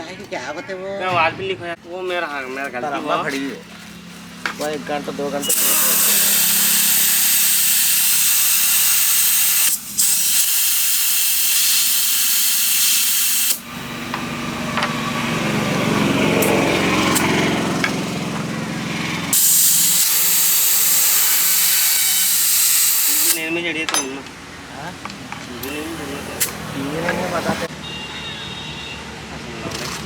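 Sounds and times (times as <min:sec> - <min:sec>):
compressed air hissing: 0:05.4 - 0:14.0, 0:19.3 - 0:23.5.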